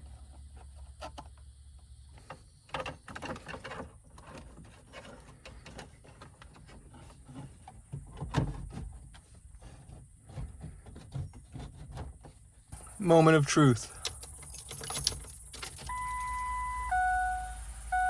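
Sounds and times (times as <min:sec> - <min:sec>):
wiring and plastic rustling: 0:02.1 - 0:16.4.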